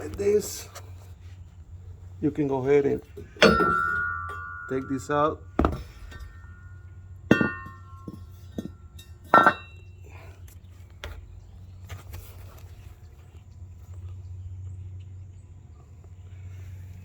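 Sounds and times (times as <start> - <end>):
ringing metal clanks: 3.0 - 10.3
light metal knocks: 3.1 - 9.8.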